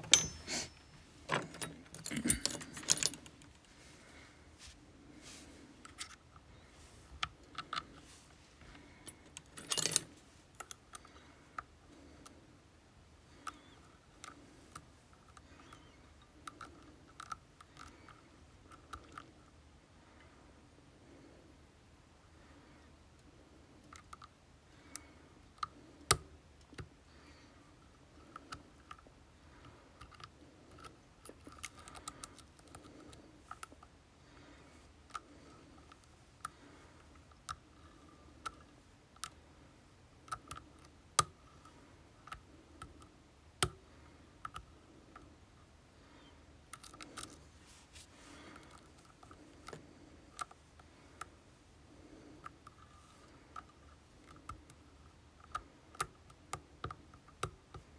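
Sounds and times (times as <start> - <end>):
lock picks clicking in lock: 0.0 - 3.6, 9.0 - 11.7.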